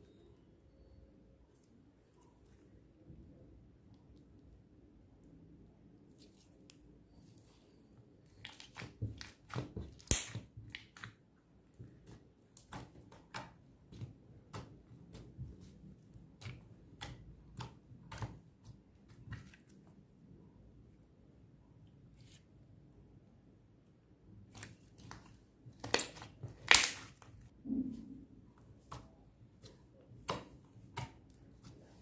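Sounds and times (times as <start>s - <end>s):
slime popping and crackling: 8.5s - 11.0s, 25.8s - 27.2s.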